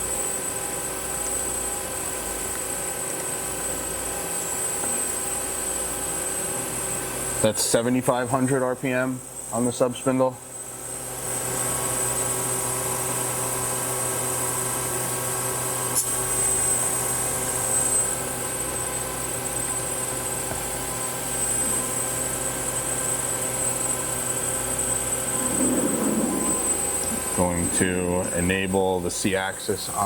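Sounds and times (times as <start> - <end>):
lathe spindle whine: 0.0 - 29.4
machine hum: 10.5 - 30.0.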